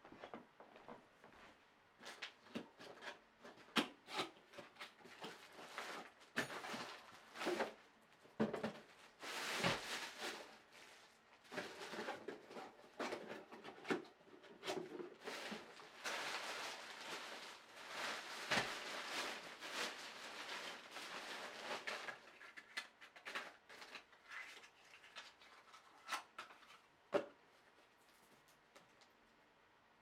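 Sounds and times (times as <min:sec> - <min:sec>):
packaging rustling and crinkling: 0:04.5 - 0:07.8, 0:08.6 - 0:14.0, 0:14.6 - 0:26.9.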